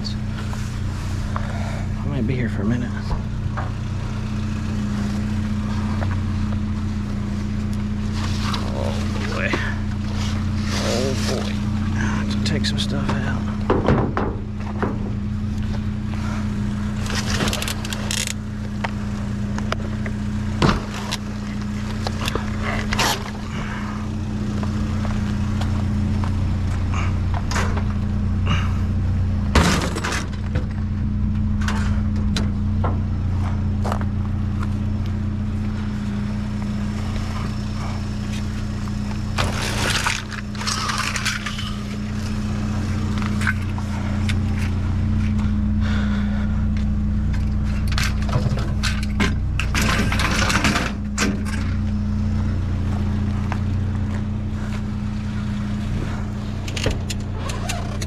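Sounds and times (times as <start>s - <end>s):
steady engine hum: 0.0s - 58.0s
junk clattering in a dumpster: 8.2s - 16.3s, 26.8s - 34.1s, 37.2s - 45.2s, 47.3s - 51.9s.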